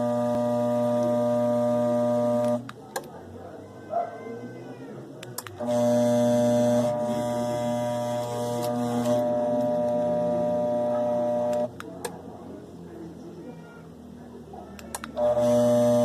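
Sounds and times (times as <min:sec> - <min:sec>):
electric motor humming: 0:00.0 - 0:02.7, 0:05.6 - 0:11.7, 0:15.0 - 0:16.0
click: 0:02.4 - 0:03.1, 0:05.2 - 0:05.6, 0:14.8 - 0:15.2.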